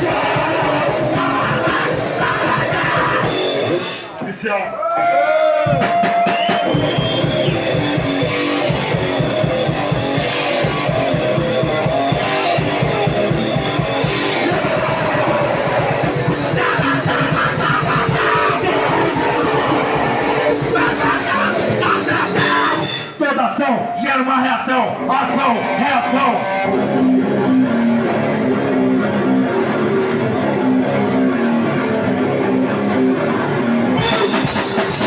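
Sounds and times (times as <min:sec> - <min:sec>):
distorted electric guitar: 0:00.0 - 0:04.3, 0:05.7 - 0:24.1, 0:24.8 - 0:35.0
fast pounding drum kit: 0:00.0 - 0:04.4, 0:05.6 - 0:23.4, 0:33.8 - 0:35.0.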